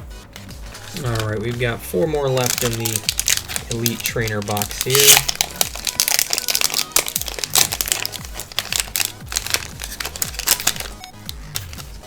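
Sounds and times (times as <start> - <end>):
electronic music with bass beat: 0.0 - 5.8, 9.2 - 12.0
foil wrapper crinkling: 0.3 - 12.0.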